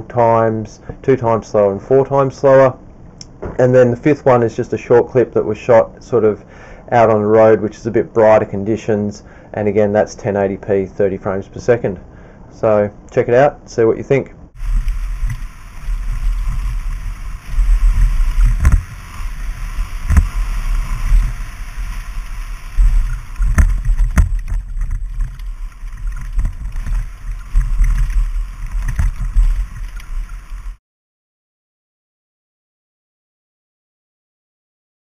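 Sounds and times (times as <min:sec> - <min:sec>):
wind buffeting microphone: 0:14.6 - 0:25.4.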